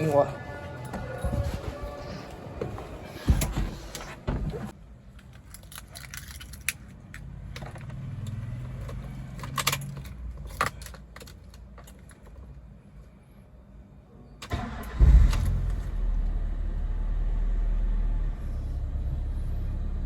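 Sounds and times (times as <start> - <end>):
car keys jangling: 5.2 - 7.3, 8.8 - 12.5.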